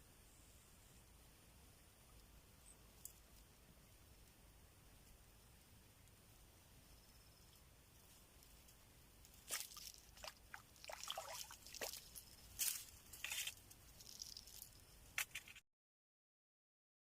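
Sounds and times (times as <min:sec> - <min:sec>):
rustles clicks and scrapes: 0:11.6 - 0:15.6.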